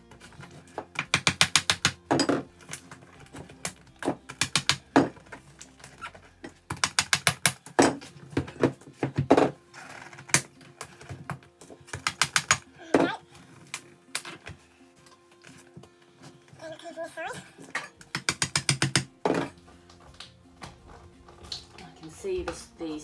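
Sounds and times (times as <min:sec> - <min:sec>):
screwdriver prying clicks and cracks: 0:01.0 - 0:02.0, 0:03.6 - 0:05.1, 0:06.7 - 0:07.6, 0:11.9 - 0:12.6, 0:18.0 - 0:19.1
screwdriver scraping: 0:11.9 - 0:12.7.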